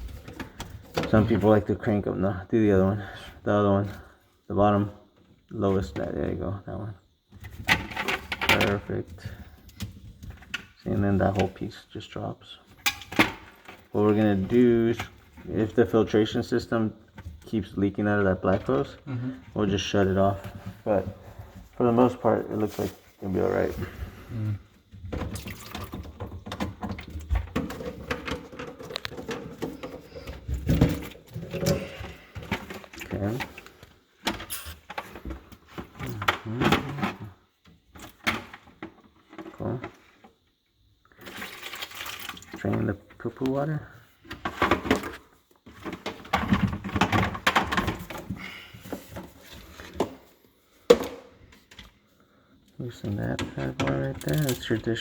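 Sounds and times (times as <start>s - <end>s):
drain pipe parts clicking and rattling: 0.0s - 1.7s, 7.4s - 11.6s, 12.7s - 16.0s, 24.8s - 37.2s, 41.1s - 50.2s, 52.9s - 55.0s.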